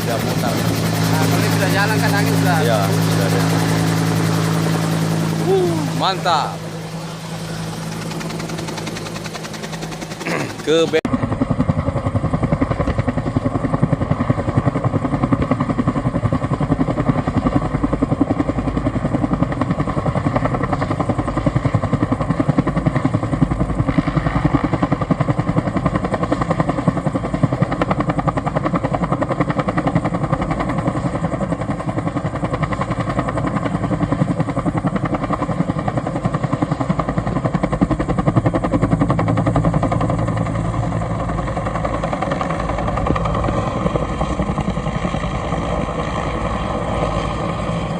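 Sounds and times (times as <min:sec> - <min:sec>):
helicopter engine noise: 0:00.0 - 0:47.9
helicopter rotor beating: 0:00.0 - 0:47.9.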